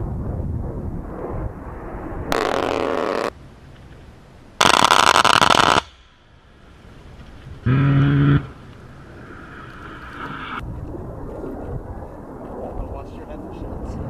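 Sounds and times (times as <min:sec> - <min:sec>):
low jet rumble: 0:00.0 - 0:04.6, 0:05.9 - 0:14.0
rotary cannon firing: 0:02.3 - 0:03.3, 0:04.6 - 0:06.0.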